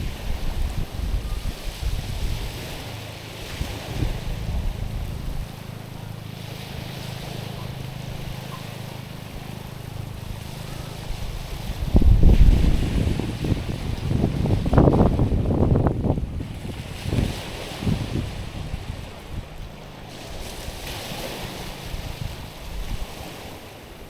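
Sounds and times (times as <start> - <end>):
small waves on pebbly shore: 0.0 - 24.0
wind buffeting microphone: 0.0 - 24.0.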